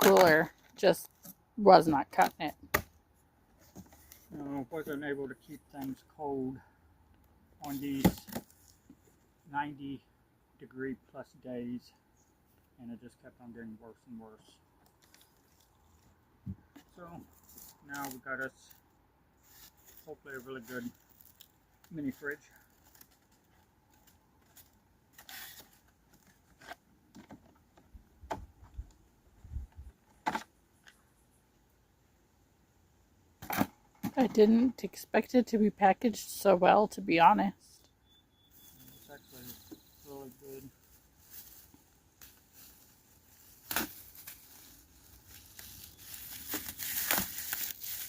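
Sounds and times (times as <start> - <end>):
packaging crinkling and rustling: 19.5 - 27.3, 38.9 - 48.0.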